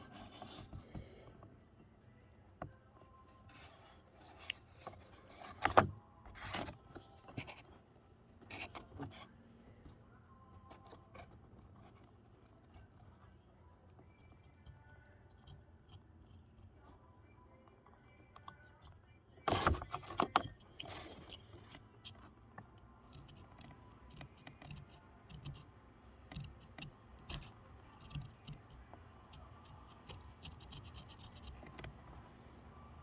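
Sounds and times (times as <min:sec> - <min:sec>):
carving tool scraping wood: 0:00.0 - 0:01.1, 0:03.4 - 0:07.8, 0:08.4 - 0:09.3, 0:14.0 - 0:16.9, 0:18.0 - 0:33.0.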